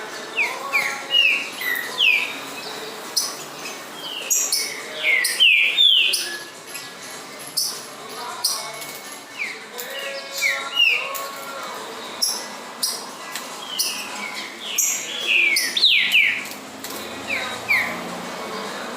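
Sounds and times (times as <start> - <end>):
bird singing whistled notes: 13.7 - 16.5.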